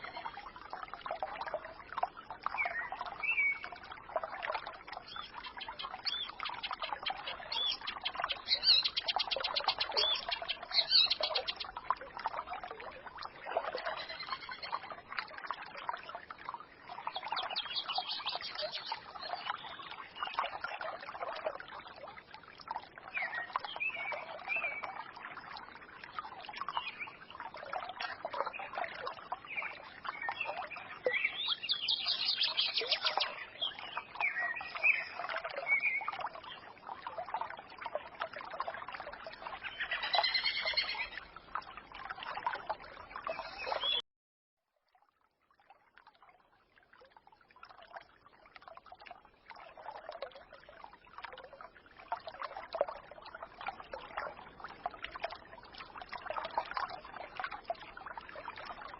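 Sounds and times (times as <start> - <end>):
stream babbling: 0.0 - 44.0, 45.9 - 58.9
songbirds chirping and trilling: 2.1 - 11.8, 13.6 - 15.0, 17.0 - 20.9, 28.1 - 36.7, 39.3 - 41.4.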